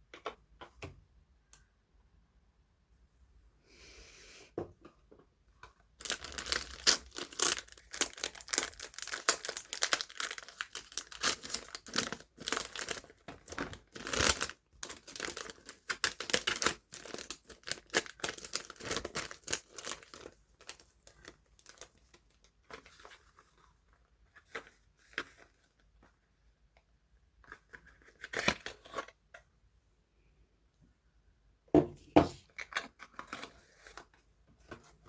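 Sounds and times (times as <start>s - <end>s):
packaging crinkling and tearing: 6.0s - 23.4s.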